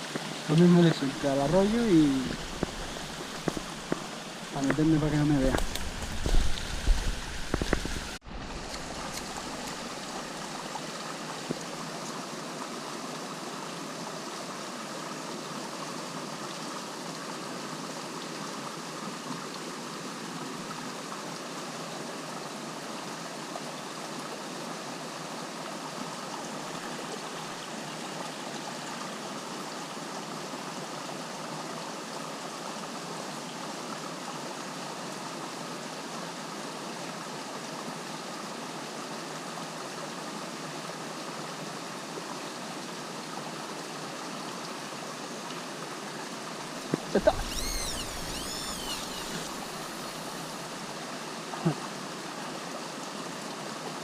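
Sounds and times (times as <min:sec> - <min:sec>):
river water over stones: 0:00.0 - 0:54.0.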